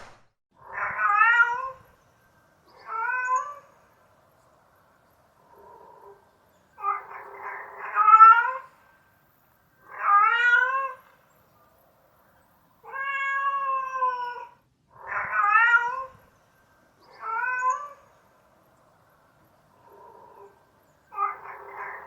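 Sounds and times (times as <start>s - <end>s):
cat meowing: 0.6s - 1.9s, 2.8s - 3.8s, 6.8s - 8.8s, 9.8s - 11.2s, 12.8s - 16.3s, 17.1s - 18.1s, 19.9s - 22.0s.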